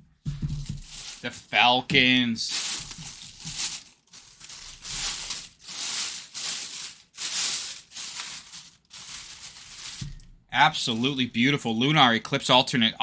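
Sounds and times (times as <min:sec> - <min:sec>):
plastic wrapping crinkling: 0:00.3 - 0:11.6.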